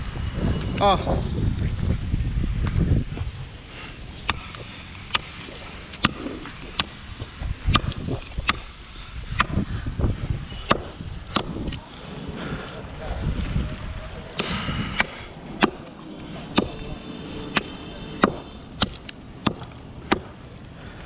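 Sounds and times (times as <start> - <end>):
blade chopping wood: 4.2 - 7.0, 7.7 - 8.7, 9.4 - 9.6, 10.7 - 11.8, 14.4 - 16.8, 17.5 - 20.5.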